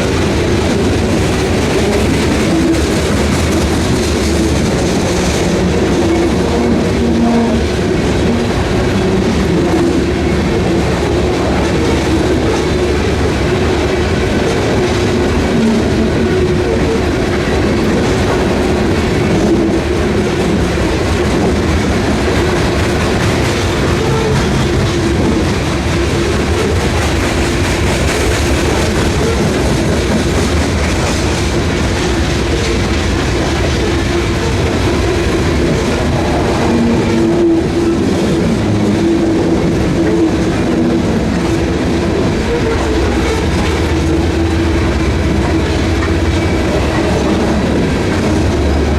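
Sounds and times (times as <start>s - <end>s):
freight train cars rolling: 0.0s - 48.9s.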